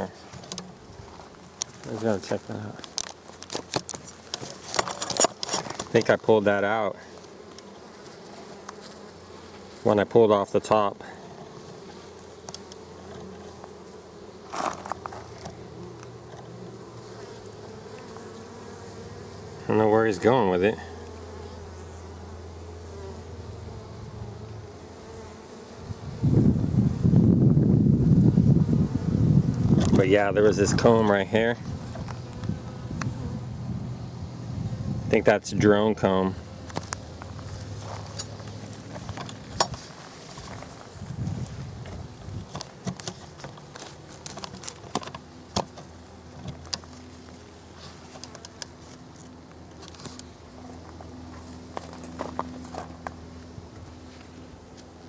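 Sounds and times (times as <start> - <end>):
honey bees buzzing: 0.0 - 55.0
hive parts clicking and knocking: 1.6 - 6.1, 41.8 - 46.9.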